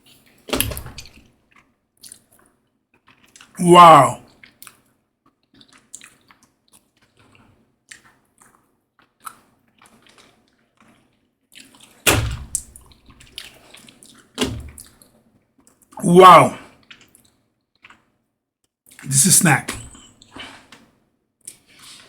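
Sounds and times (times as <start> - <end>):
wet eating clicks and smacks: 5.5 - 6.5, 7.9 - 10.2.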